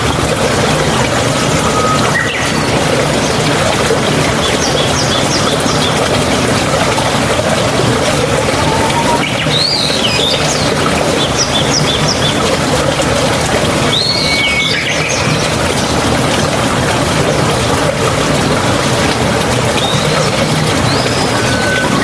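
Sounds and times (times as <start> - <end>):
flowing water rushing: 0.0 - 22.0
songbirds singing: 1.8 - 6.6, 9.0 - 12.6, 13.8 - 16.5.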